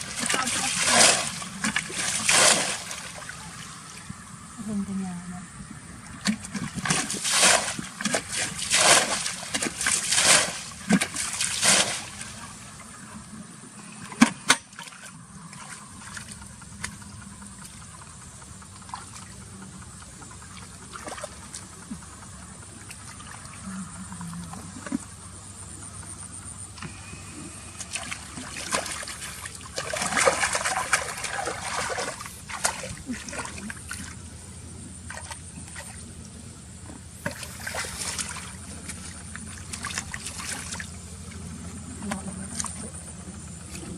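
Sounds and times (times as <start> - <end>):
water splashing: 0.0 - 4.1, 6.2 - 12.8, 27.7 - 34.3, 35.0 - 36.1, 37.2 - 43.8.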